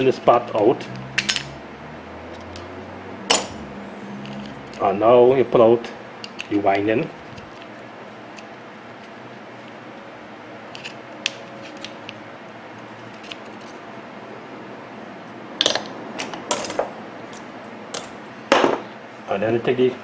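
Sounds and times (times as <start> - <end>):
small metal clicks and scraping: 15.6 - 18.2.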